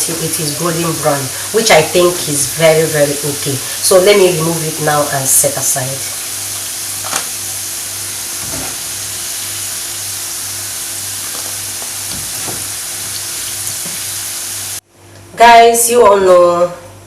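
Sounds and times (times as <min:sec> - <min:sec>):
plantain sizzling in oil: 0:00.1 - 0:14.8
utensil knocks: 0:11.3 - 0:13.2.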